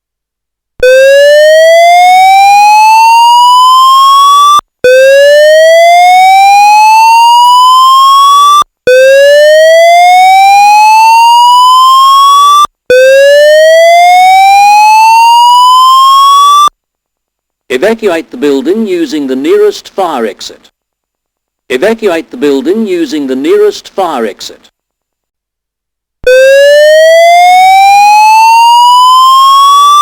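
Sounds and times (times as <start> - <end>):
rising fire alarm tone: 0.8 - 16.7, 26.3 - 30.0.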